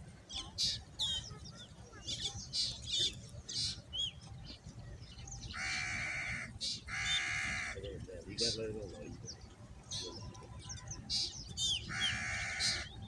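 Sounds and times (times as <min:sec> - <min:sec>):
birds chirping: 0:00.0 - 0:13.0
long harsh bird cries: 0:05.4 - 0:07.9, 0:11.0 - 0:13.0.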